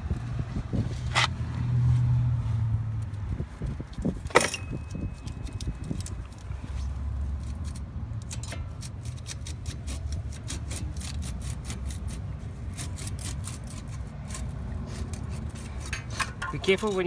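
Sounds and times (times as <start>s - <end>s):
metal clicking and scraping: 7.4s - 11.8s, 14.3s - 17.0s.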